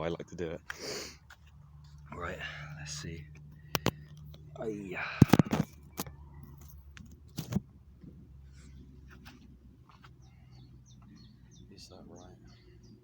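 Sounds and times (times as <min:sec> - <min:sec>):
low steady hum: 0:00.0 - 0:13.0
recording device handling knocks: 0:05.2 - 0:06.1.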